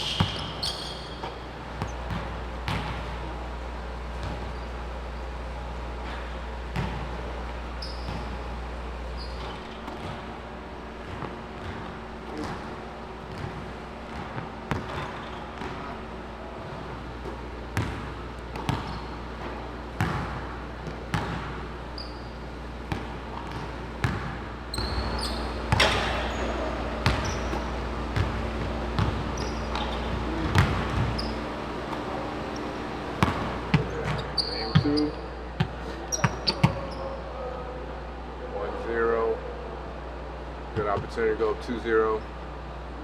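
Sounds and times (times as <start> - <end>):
brief high squeaks: 0.0 - 1.3, 24.7 - 26.6, 34.2 - 35.2
basketballs bouncing: 0.0 - 5.1, 6.0 - 37.0
hum of large hall: 0.0 - 43.0.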